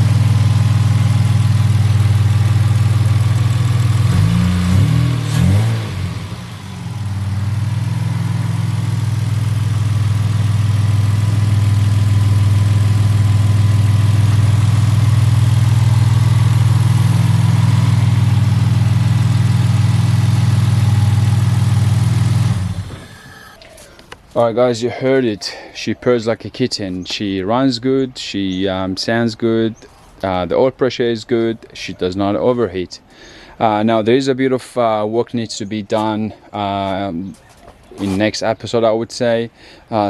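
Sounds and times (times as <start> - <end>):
car engine revving and idling: 0.0 - 23.8.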